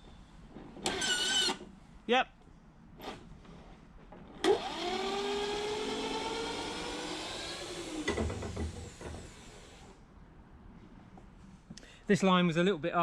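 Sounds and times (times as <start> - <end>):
electric drill whirring: 0.9 - 1.6, 4.4 - 9.9.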